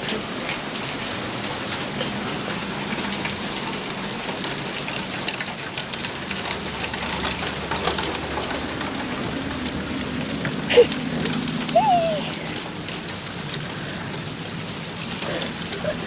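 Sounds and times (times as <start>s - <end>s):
heavy rain pouring: 0.0s - 16.0s
raindrops ticking: 0.0s - 16.0s.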